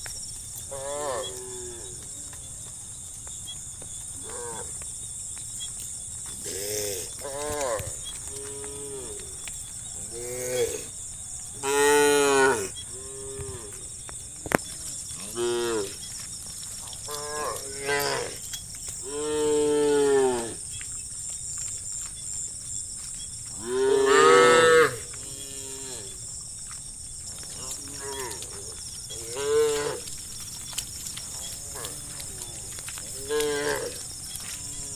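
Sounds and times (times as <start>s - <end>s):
cattle mooing: 23.6s - 26.2s.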